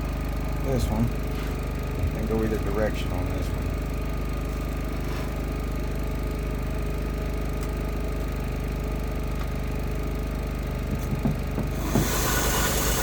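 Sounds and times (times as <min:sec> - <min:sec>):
belt grinder humming: 0:11.6 - 0:13.0.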